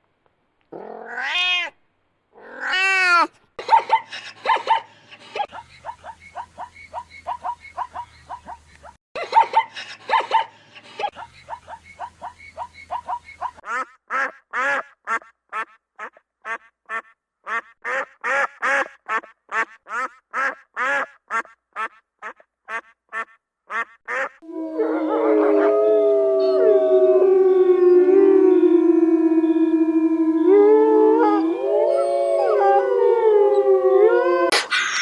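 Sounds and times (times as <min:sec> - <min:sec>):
animals howling together: 0:24.4 - 0:35.0.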